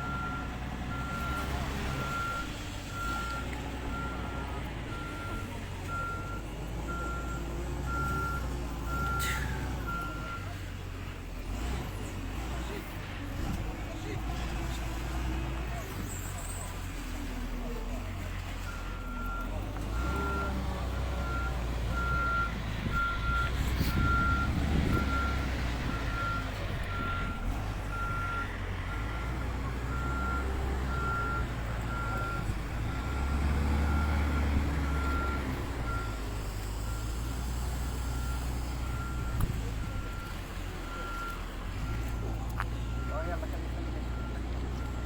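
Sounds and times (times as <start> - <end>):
engine rumble: 0.0 - 45.0
reversing alarm beeping: 21.2 - 36.2.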